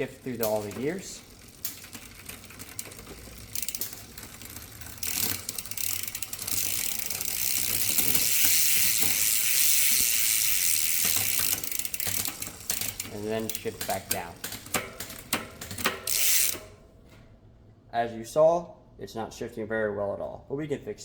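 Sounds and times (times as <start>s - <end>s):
bicycle chain ratcheting clicks: 0.0s - 16.7s.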